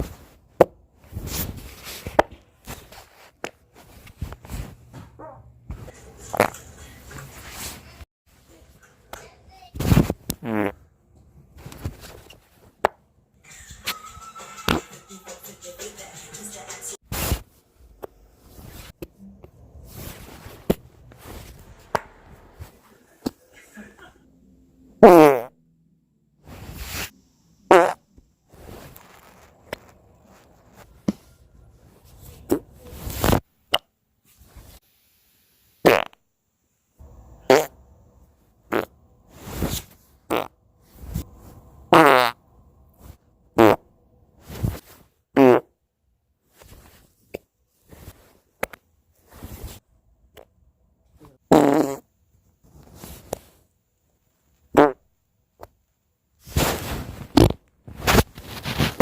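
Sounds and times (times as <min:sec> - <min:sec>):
farts: 0:10.3 - 0:10.8, 0:25.0 - 0:25.5, 0:27.7 - 0:28.0, 0:35.8 - 0:36.2, 0:37.4 - 0:37.8, 0:38.7 - 0:38.9, 0:39.6 - 0:40.5, 0:41.9 - 0:42.4, 0:43.6 - 0:43.8, 0:45.4 - 0:45.7, 0:51.5 - 0:52.1, 0:54.7 - 0:55.0.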